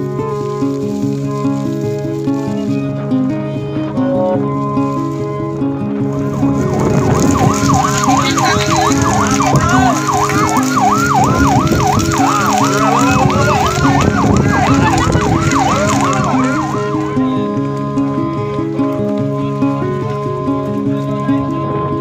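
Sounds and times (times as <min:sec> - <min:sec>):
background music: 0:00.0 - 0:22.0
siren yelping: 0:06.7 - 0:17.9.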